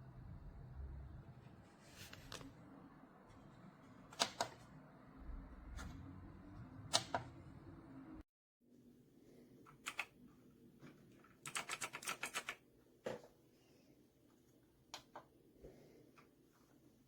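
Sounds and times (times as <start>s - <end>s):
typing on computer keyboard: 9.7s - 10.2s, 11.4s - 12.6s.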